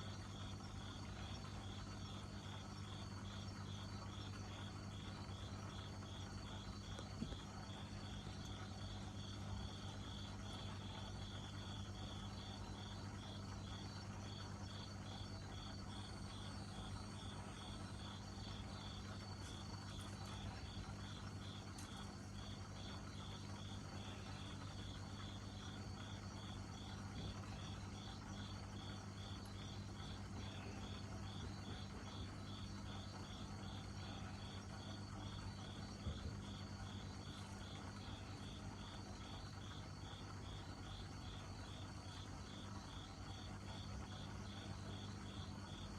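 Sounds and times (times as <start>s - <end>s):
cricket chirping: 0.0s - 45.9s
low steady hum: 0.0s - 45.9s.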